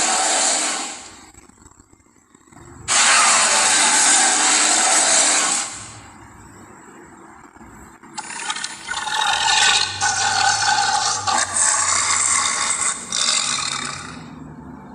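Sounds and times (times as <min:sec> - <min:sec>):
hissing rasping creature call: 0:02.9 - 0:05.4, 0:08.9 - 0:14.3
rattly rasping creature call: 0:08.2 - 0:14.3.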